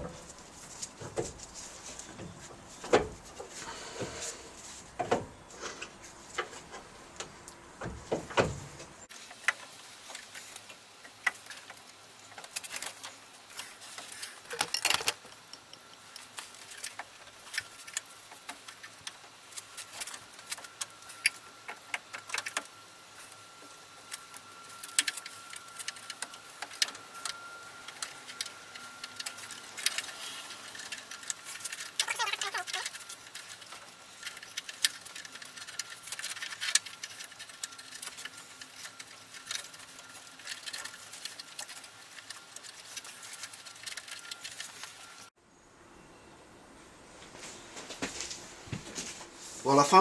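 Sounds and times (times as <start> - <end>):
tools and metal parts clicking: 9.2 - 45.3.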